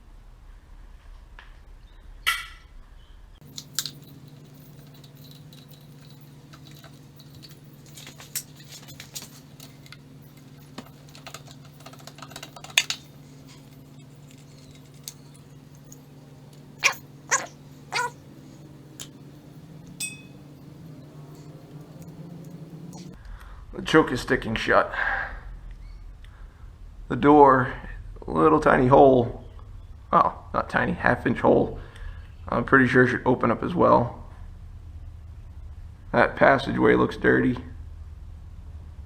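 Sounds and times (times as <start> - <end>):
small metal parts clinking: 3.4 - 23.2
steady low hum: 3.4 - 23.6
dog barking: 16.7 - 19.5.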